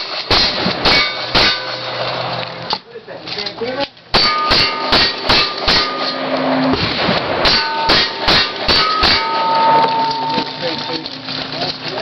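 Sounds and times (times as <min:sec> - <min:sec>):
steel targets ringing: 0:00.0 - 0:02.1, 0:04.1 - 0:06.8, 0:07.4 - 0:11.2.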